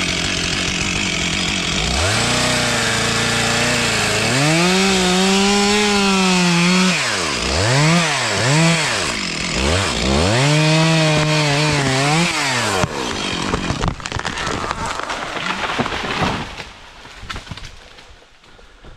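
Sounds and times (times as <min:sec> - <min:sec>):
chainsaw cutting at high revs: 0:00.0 - 0:16.2
falling tree cracking and crashing: 0:09.1 - 0:18.4.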